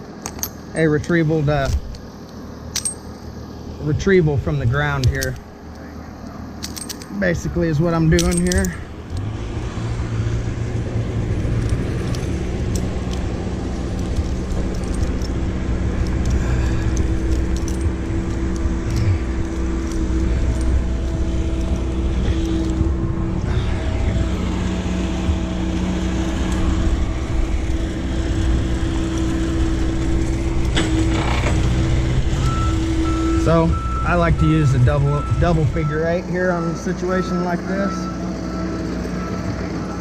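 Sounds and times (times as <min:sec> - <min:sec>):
engine running steadily: 0:00.0 - 0:40.0
light clicks and clinks: 0:05.0 - 0:09.3, 0:11.4 - 0:22.9.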